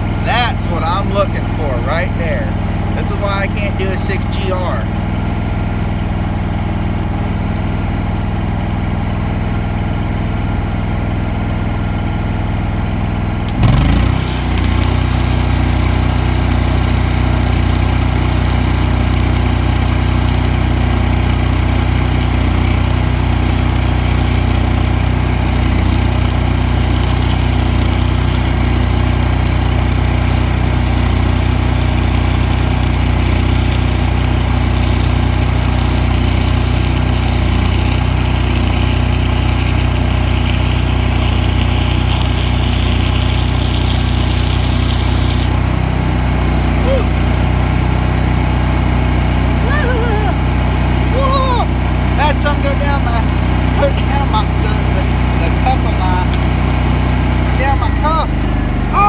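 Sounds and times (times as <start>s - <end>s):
welder engine running: 0.0s - 59.0s
welding arc crackle and hiss: 13.5s - 45.7s, 49.0s - 58.6s.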